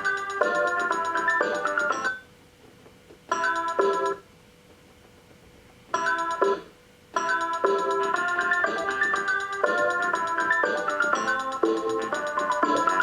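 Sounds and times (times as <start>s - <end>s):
electronic keyboard melody: 0.0s - 2.2s, 3.3s - 4.2s, 5.9s - 13.0s.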